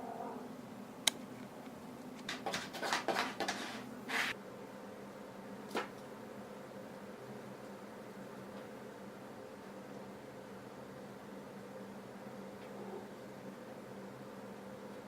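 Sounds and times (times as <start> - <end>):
low room hum: 0.0 - 15.0
rustling and scraping: 2.2 - 4.4.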